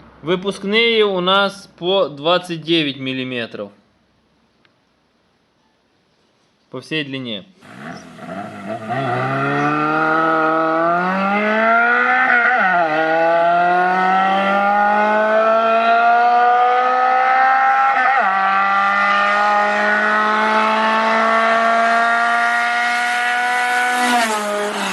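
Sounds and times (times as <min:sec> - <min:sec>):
car engine accelerating: 0:07.6 - 0:24.9.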